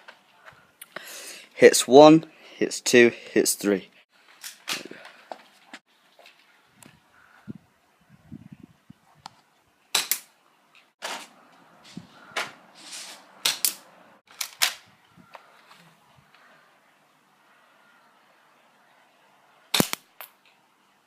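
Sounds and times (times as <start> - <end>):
bb gun pops: 19.8 - 20.3.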